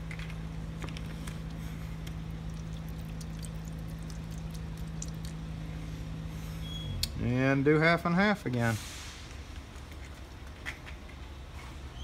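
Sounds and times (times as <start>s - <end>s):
low hum: 0.0s - 7.8s
liquid pouring into container: 1.0s - 5.4s.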